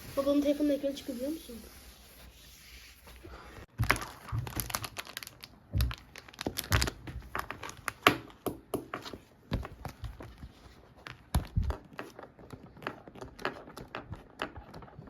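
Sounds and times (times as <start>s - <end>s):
crinkling handling noise: 3.7s - 8.4s.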